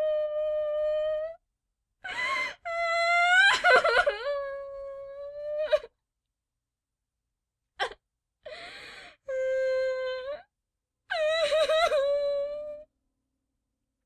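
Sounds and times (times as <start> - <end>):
sharp gasp: 8.5 - 9.2.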